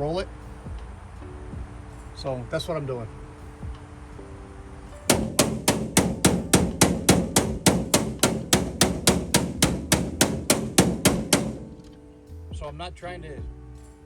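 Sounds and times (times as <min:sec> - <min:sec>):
hammer tapping metal plate: 0:05.1 - 0:12.0.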